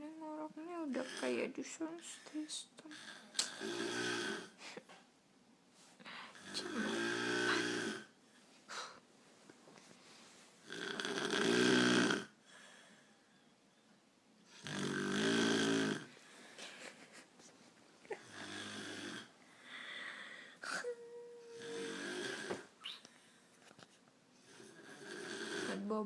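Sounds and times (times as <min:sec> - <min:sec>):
woman snoring: 0:00.9 - 0:04.6, 0:06.3 - 0:08.1, 0:10.6 - 0:12.4, 0:14.5 - 0:16.1, 0:18.1 - 0:22.7, 0:24.4 - 0:26.0.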